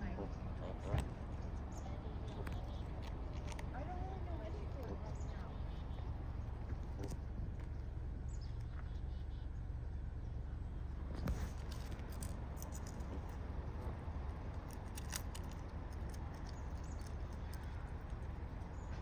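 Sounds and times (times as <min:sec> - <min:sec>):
birds pecking chip bag: 0:02.1 - 0:05.2, 0:11.3 - 0:19.0.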